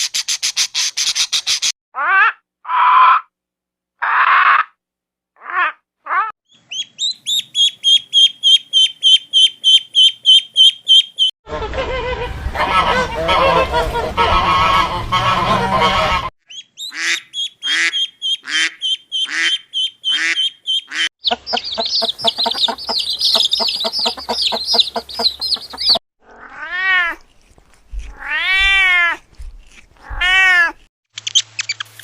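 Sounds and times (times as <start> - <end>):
high even bird chirps: 6.5 - 11.3, 16.4 - 26.0
overlapping bird calls: 6.5 - 11.3, 15.0 - 26.0
coarse bird calls: 16.5 - 26.0.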